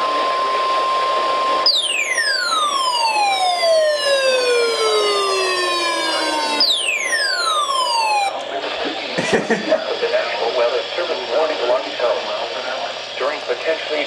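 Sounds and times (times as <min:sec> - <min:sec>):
siren-like falling sweep: 0:01.6 - 0:08.4
steady warning alarm tone: 0:01.6 - 0:08.4.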